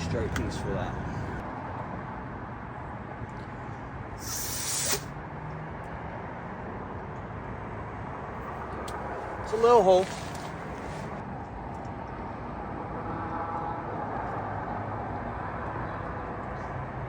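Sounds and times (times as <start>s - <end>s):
hissing spray burst: 4.2s - 5.1s.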